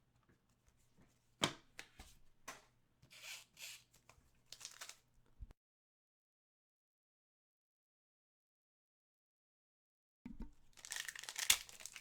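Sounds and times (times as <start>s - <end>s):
cards rustling and sliding: 2.5s - 5.0s.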